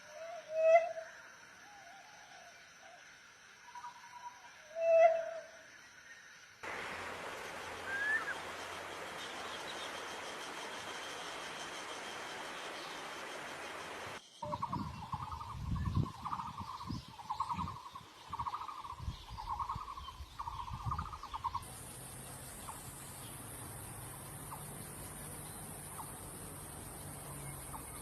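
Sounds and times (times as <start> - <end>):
high-pitched hiss: 6.6 - 28.0
wind rumble: 14.0 - 21.7.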